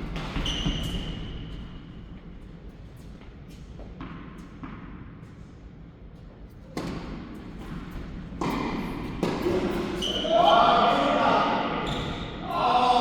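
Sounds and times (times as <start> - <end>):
tennis balls struck and bouncing: 6.8 - 9.9.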